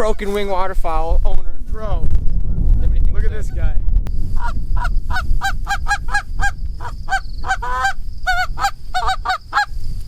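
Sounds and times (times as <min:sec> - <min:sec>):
low rumble: 0:01.0 - 0:08.3
goose call clucks and honks: 0:04.4 - 0:09.7.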